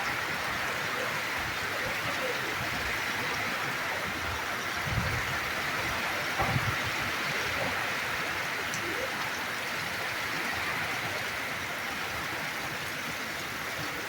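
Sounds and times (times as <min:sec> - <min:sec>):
steady rain falling: 0:00.0 - 0:14.0.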